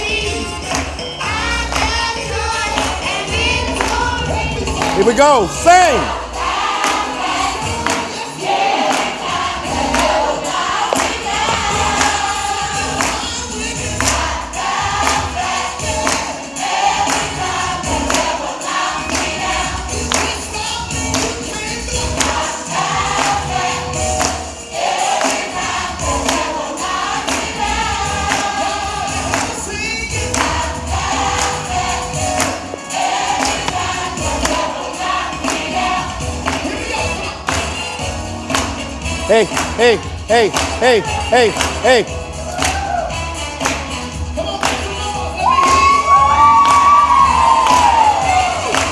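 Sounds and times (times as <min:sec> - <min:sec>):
choir singing praise song: 0:00.0 - 0:48.9
percussion beat: 0:00.0 - 0:48.9
band playing: 0:04.8 - 0:06.3, 0:38.9 - 0:42.3.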